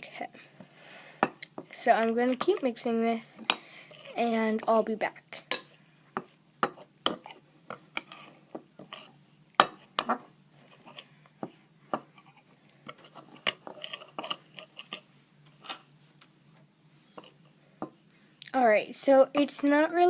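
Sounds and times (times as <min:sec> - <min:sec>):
knife scraping against bowl: 0:03.5 - 0:04.2, 0:05.5 - 0:15.1, 0:17.0 - 0:17.5.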